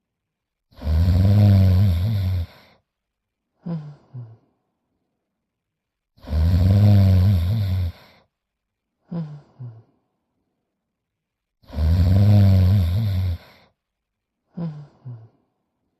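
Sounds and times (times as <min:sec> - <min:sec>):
cartoon dog snoring: 0:00.7 - 0:02.8, 0:03.6 - 0:04.5, 0:06.2 - 0:08.2, 0:11.6 - 0:13.7, 0:14.5 - 0:15.4.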